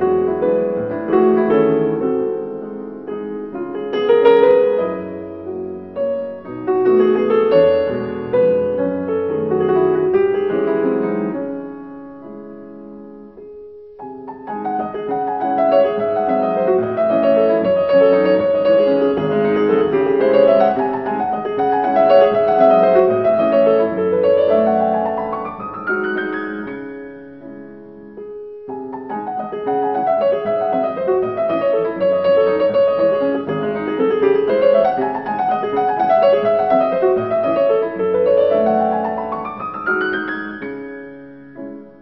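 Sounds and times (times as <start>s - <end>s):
solo piano music: 0.0s - 42.0s.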